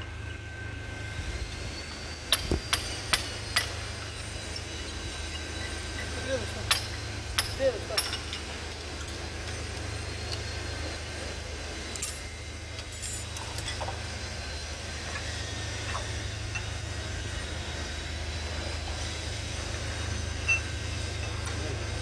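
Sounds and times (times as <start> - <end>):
metal parts and tools clinking: 11.9 - 13.9.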